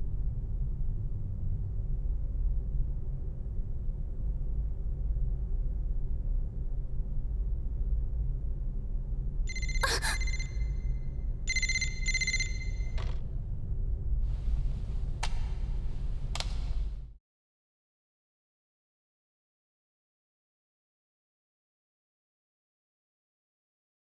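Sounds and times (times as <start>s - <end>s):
steady low rumble: 0.0s - 9.4s, 13.3s - 17.2s
bright ringing tone: 9.5s - 13.0s.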